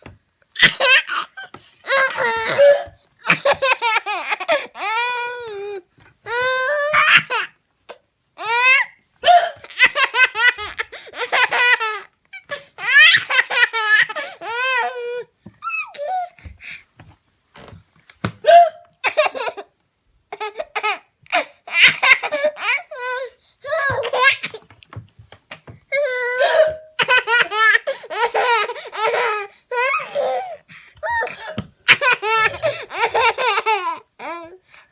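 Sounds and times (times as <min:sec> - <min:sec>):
baby laughing hysterically: 0:00.6 - 0:05.3, 0:09.6 - 0:16.3, 0:19.0 - 0:19.6, 0:20.4 - 0:22.9, 0:23.9 - 0:24.6, 0:26.5 - 0:34.4.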